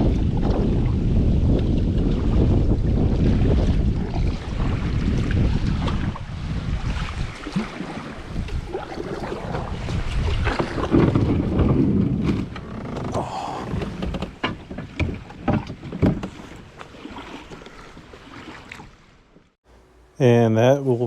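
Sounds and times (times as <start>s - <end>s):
wind buffeting microphone: 0.0s - 16.8s
water slapping kayak hull: 0.0s - 19.6s.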